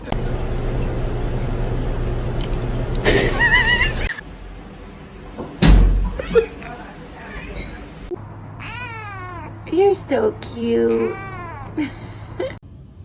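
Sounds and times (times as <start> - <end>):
steady low hum: 0.0 - 5.3.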